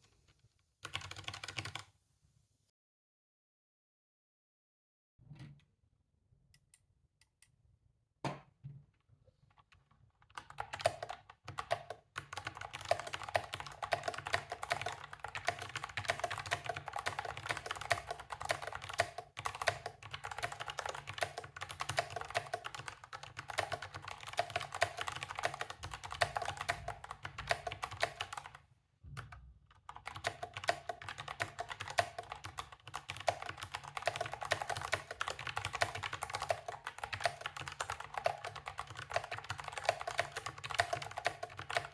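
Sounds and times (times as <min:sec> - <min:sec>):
mechanical keyboard typing: 0:00.8 - 0:01.8, 0:10.2 - 0:28.6, 0:29.2 - 0:41.9.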